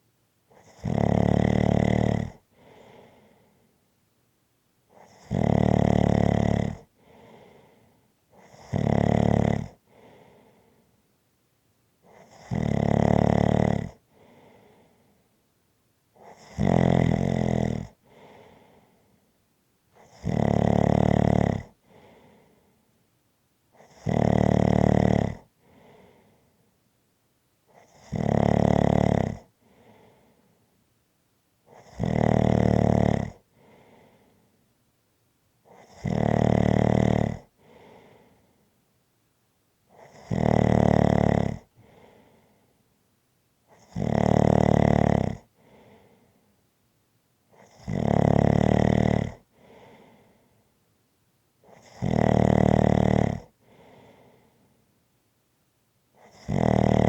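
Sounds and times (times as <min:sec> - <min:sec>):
person snoring: 0:00.5 - 0:03.1, 0:05.0 - 0:07.7, 0:08.4 - 0:09.8, 0:12.1 - 0:14.5, 0:16.2 - 0:18.6, 0:20.0 - 0:22.2, 0:23.8 - 0:26.2, 0:27.8 - 0:30.3, 0:31.7 - 0:34.2, 0:35.7 - 0:38.4, 0:40.0 - 0:42.2, 0:43.7 - 0:46.0, 0:47.6 - 0:50.2, 0:51.7 - 0:54.4, 0:56.2 - 0:57.0
soft breath: 0:02.4 - 0:04.0, 0:06.9 - 0:08.5, 0:09.8 - 0:11.1, 0:14.0 - 0:15.5, 0:17.9 - 0:19.4, 0:21.7 - 0:23.0, 0:25.4 - 0:26.9, 0:29.4 - 0:30.8, 0:33.4 - 0:34.8, 0:37.4 - 0:38.9, 0:41.6 - 0:43.0, 0:45.4 - 0:46.7, 0:49.4 - 0:50.8, 0:53.4 - 0:55.0.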